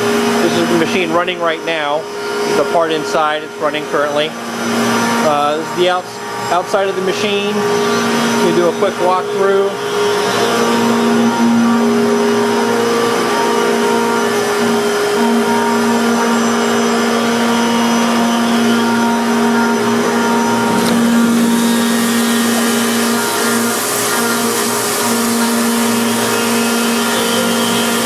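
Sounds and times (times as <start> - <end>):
machine hum with whining tones: 0.0 - 28.0.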